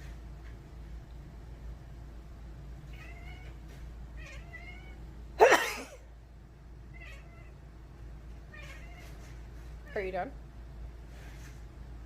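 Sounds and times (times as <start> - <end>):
cat meowing: 2.9 - 3.6, 4.2 - 5.0, 6.9 - 7.6, 8.5 - 9.3.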